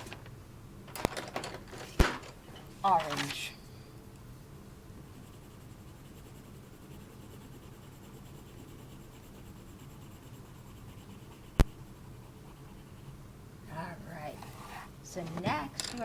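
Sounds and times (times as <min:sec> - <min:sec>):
low steady hum: 0:00.0 - 0:16.0
crayon rubbing on paper: 0:05.0 - 0:13.1.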